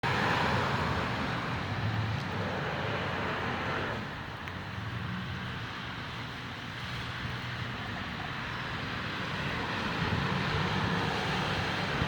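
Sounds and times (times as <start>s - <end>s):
vehicle rumble: 0.0s - 12.0s.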